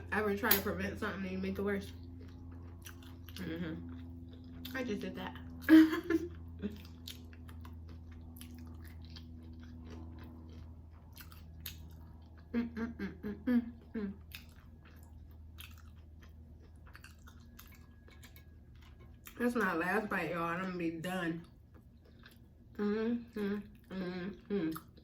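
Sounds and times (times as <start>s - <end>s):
chewing and wet mouth clicks: 1.9s - 4.8s, 6.4s - 12.5s, 14.2s - 19.4s, 21.5s - 22.5s.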